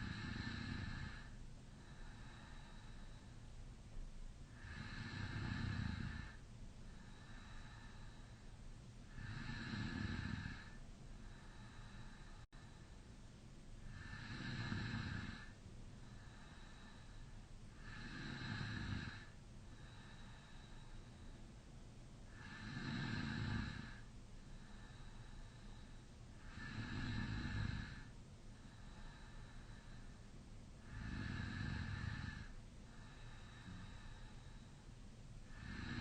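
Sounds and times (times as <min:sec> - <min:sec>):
man snoring: 0:00.0 - 0:01.3, 0:04.6 - 0:06.4, 0:09.1 - 0:10.8, 0:13.9 - 0:15.5, 0:17.8 - 0:20.4, 0:22.3 - 0:24.0, 0:26.4 - 0:28.1, 0:30.8 - 0:34.2, 0:35.5 - 0:36.0
quiet breaths: 0:00.0 - 0:36.0.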